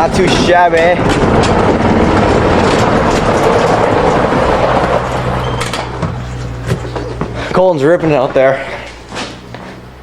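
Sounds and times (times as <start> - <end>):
dirt bike engine running hard: 0.0 - 7.6
steady low hum: 0.0 - 10.0.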